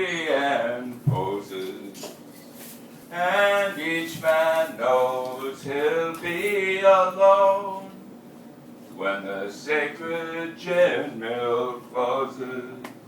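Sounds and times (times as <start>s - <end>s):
man singing unaccompanied: 0.0s - 2.0s, 3.1s - 8.0s, 9.0s - 13.0s.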